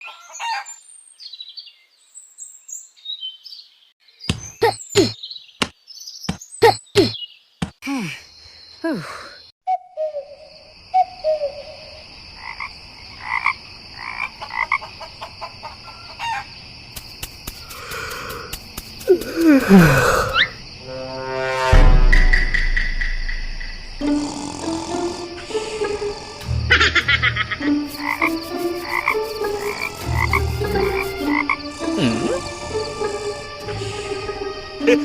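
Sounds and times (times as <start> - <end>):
high animal chirps: 22.3 - 33.8.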